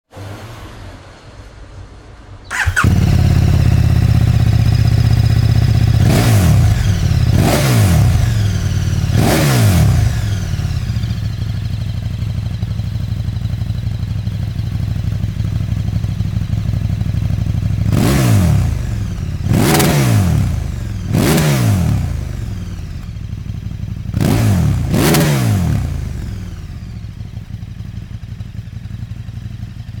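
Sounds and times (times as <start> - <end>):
motorcycle engine revving: 2.5 - 30.0.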